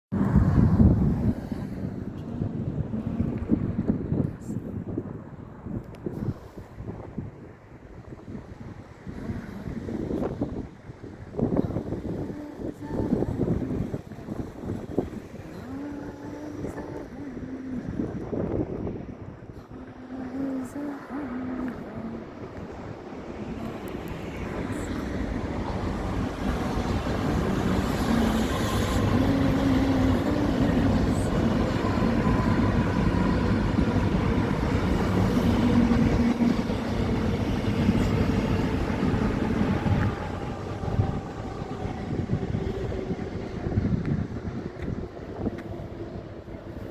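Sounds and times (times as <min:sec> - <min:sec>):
passing vehicle rumble: 0:19.6 - 0:46.9.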